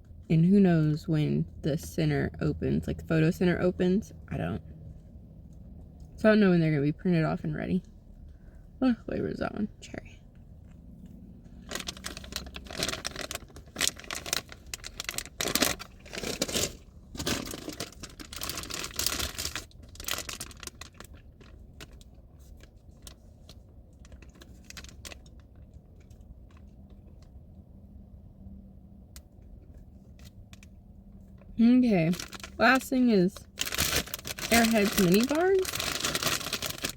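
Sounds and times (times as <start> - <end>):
plastic wrapper crinkling and tearing: 11.6 - 25.7, 32.1 - 36.9.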